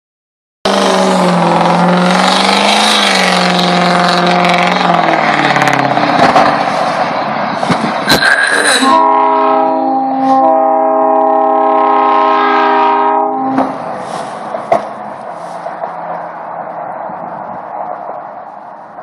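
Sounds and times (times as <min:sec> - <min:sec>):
vehicle engine: 0:00.7 - 0:19.0
wind noise: 0:03.8 - 0:10.4, 0:13.4 - 0:19.0
train horn chord: 0:08.8 - 0:13.8.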